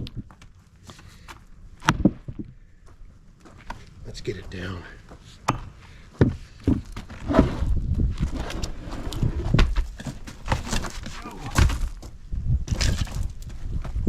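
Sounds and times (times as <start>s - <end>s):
axe splitting firewood: 1.8s - 2.4s, 9.5s - 12.1s, 12.7s - 13.4s
wood clattering and knocking: 1.8s - 2.5s, 5.5s - 7.6s, 9.5s - 13.3s.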